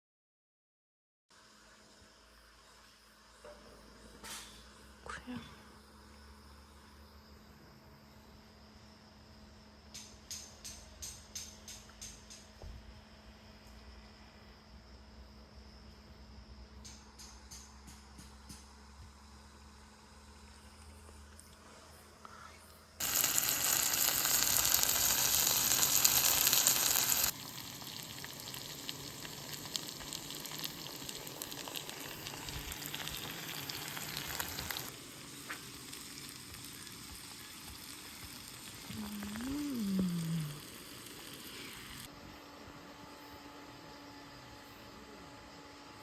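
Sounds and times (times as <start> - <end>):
food sizzling in hot oil: 23.0 - 42.1.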